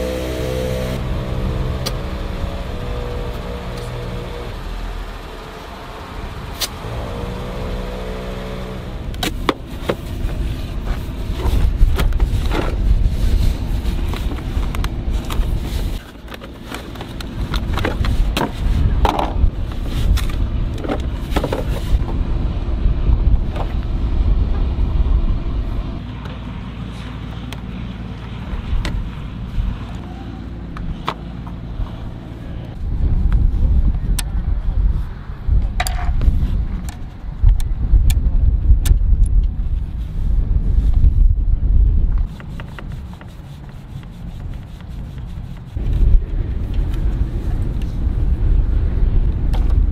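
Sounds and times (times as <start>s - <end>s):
vehicle engine and tyres rumbling: 0.0s - 49.9s
knocks and rattles of bouncing vehicle: 14.0s - 22.3s.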